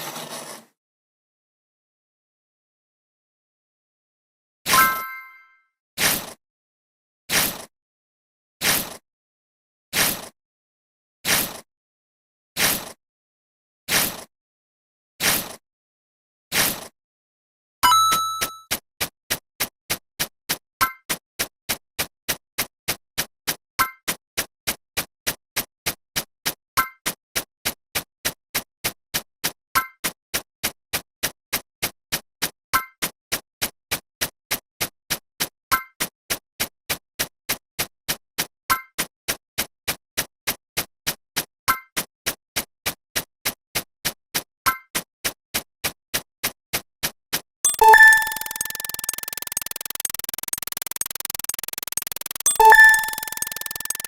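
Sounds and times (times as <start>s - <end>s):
short high beep: 17.9s - 18.6s, 47.7s - 54.0s
electronic ticking clicks: 47.7s - 54.0s.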